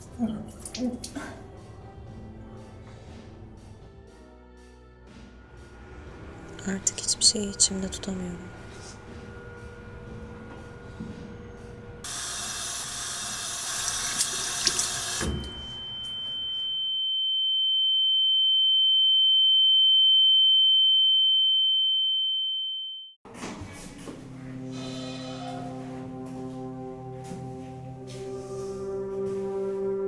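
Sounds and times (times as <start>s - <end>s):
high steady ringing tone: 15.0s - 23.2s
music with held notes: 24.4s - 30.0s.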